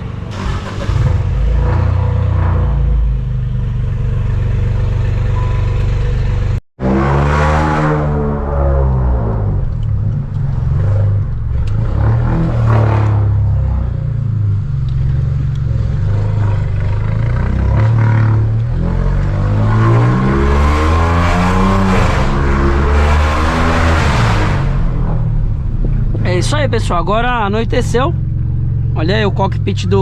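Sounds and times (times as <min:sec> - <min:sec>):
exhaust crackles: 0:00.0 - 0:30.0
car engine revving loudly: 0:06.8 - 0:09.8, 0:10.5 - 0:14.2, 0:15.6 - 0:25.4.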